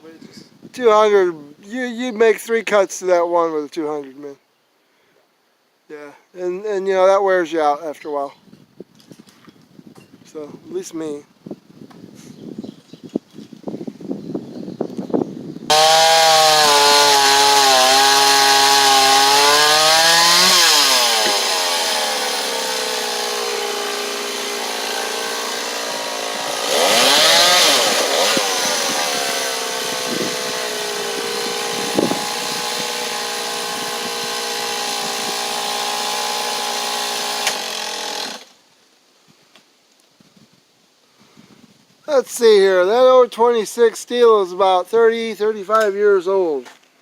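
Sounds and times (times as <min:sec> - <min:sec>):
chainsaw cutting hardwood: 0:15.7 - 0:38.6.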